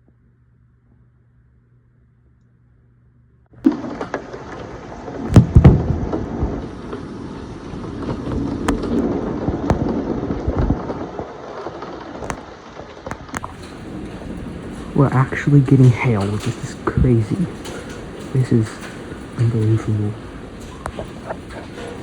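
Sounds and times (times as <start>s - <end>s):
hail and rain pelting down: 3.6s - 22.0s
hailstones clacking: 3.6s - 22.0s
low rumble: 5.3s - 10.9s.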